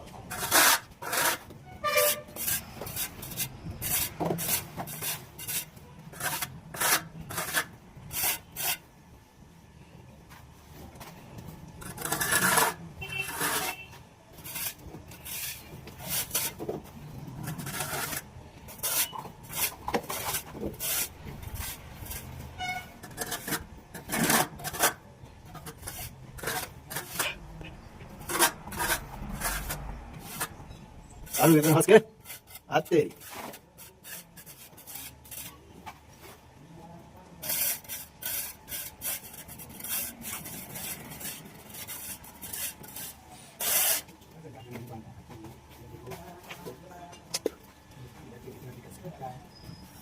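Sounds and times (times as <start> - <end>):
hand tool scraping plaster: 0.3 - 8.8, 11.8 - 13.8, 14.4 - 16.8, 17.4 - 30.6, 31.3 - 35.8, 37.4 - 44.1.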